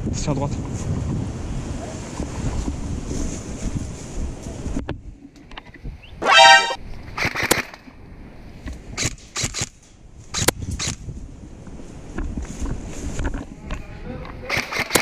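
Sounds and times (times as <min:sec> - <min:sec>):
short horn-like tone: 0:06.2 - 0:06.8.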